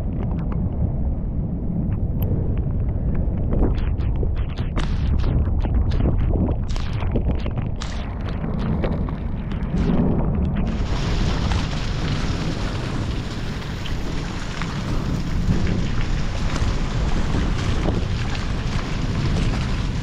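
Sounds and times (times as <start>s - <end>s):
wind buffeting microphone: 0.0s - 20.0s
heavy rain hissing: 10.7s - 20.0s.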